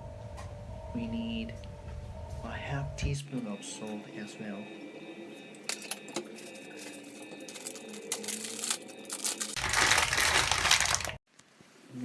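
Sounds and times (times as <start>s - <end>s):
plastic packaging crinkling: 6.4s - 11.2s.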